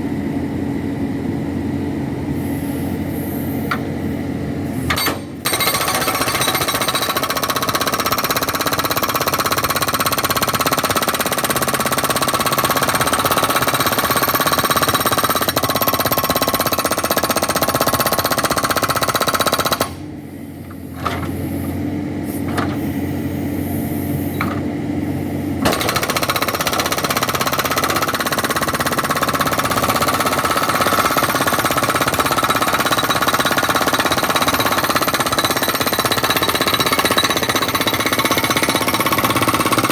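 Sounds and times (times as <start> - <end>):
backhoe engine running: 0.0 - 39.9
hydraulic rock breaker hammering: 4.8 - 20.1, 25.6 - 39.9.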